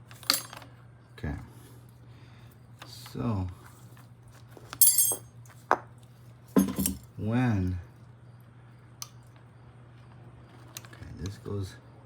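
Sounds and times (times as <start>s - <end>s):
pump parts clicking and clinking: 6.5s - 7.1s.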